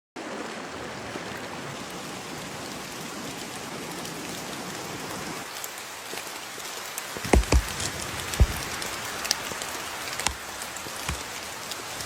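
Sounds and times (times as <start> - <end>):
rain hissing: 0.2 - 12.0
raindrops ticking: 5.5 - 12.0.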